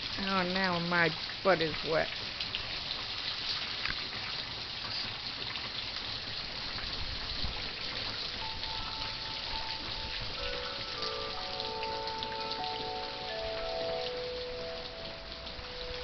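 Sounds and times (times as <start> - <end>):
heavy rain pouring: 0.0 - 16.0
wind chimes ringing softly: 7.6 - 16.0.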